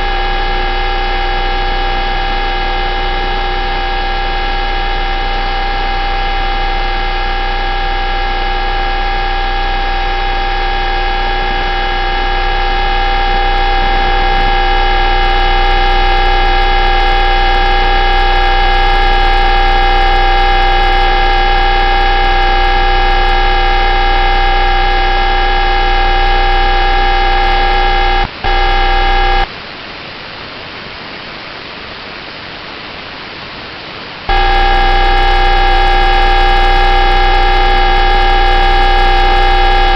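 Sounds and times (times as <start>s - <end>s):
radio buzzing hum: 0.0s - 29.5s, 34.3s - 39.9s
static hiss: 0.0s - 39.9s.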